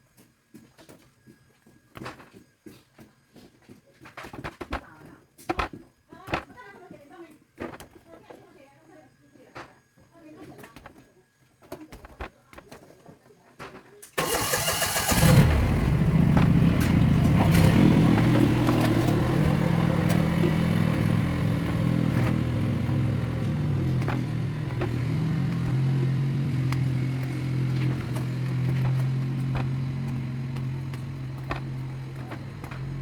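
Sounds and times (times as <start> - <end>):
engine cranking and idling: 14.2 - 33.0.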